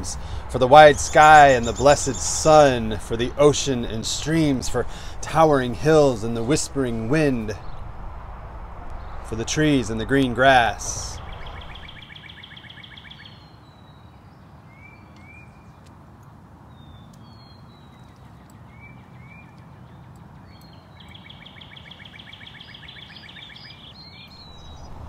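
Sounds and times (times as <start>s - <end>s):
birds chirping: 0.0s - 16.0s, 16.6s - 25.0s
low background noise: 0.0s - 25.0s
bird trilling: 9.0s - 13.6s.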